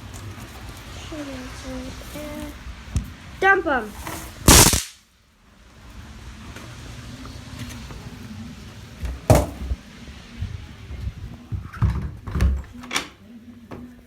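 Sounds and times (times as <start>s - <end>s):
bang snap cracking: 4.5s - 5.0s.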